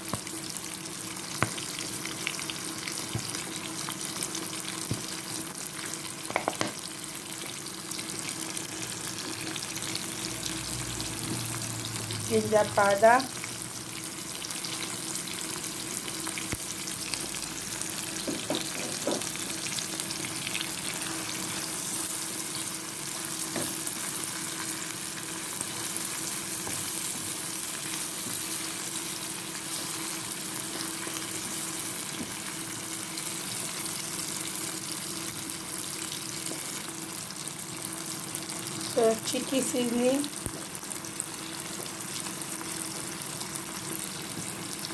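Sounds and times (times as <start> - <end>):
food sizzling in a pot: 0.0 - 44.9
spoon knocking on pot: 6.3 - 6.8, 18.2 - 19.4.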